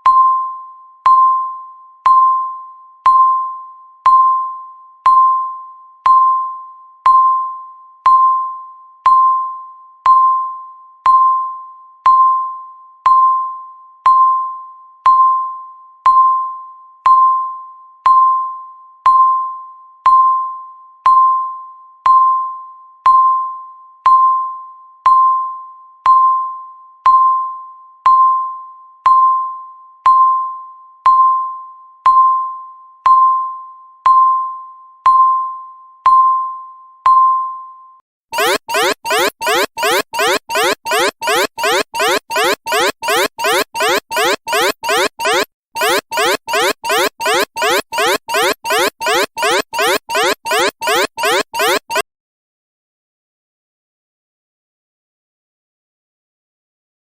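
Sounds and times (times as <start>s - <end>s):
timer ding: 38.4s - 52.0s.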